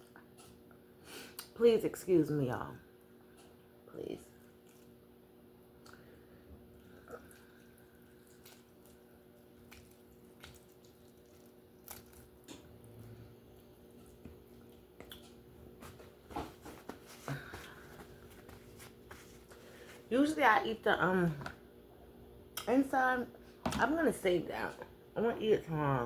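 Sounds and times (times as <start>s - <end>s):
wet eating sounds: 4.3s - 5.1s, 5.7s - 15.9s.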